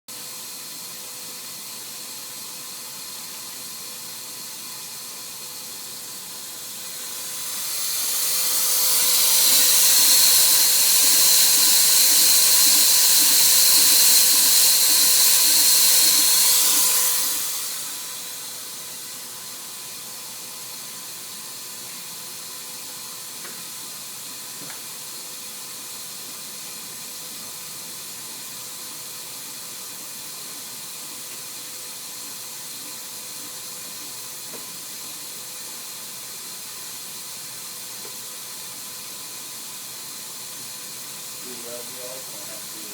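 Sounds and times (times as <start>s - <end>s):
machine hum and hiss: 0.1s - 42.9s
loud hiss and high whine: 6.3s - 21.0s, 40.2s - 42.9s.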